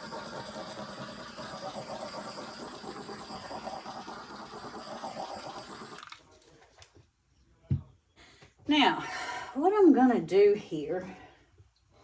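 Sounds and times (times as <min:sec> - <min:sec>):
torch flame hissing: 0:00.0 - 0:06.0.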